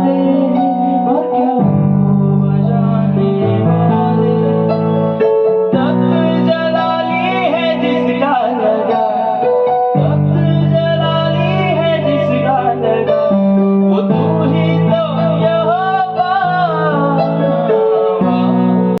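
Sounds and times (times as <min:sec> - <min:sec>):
person singing a worship song: 0:00.0 - 0:05.1, 0:05.7 - 0:19.0
instrumental accompaniment: 0:00.0 - 0:19.0.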